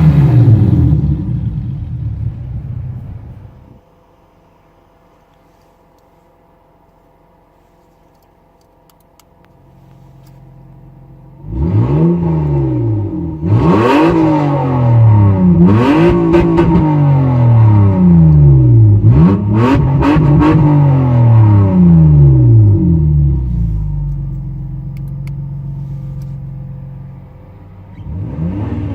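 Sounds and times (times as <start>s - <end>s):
car engine revving: 0.0s - 3.8s, 9.6s - 28.9s
car engine idling: 0.0s - 28.9s.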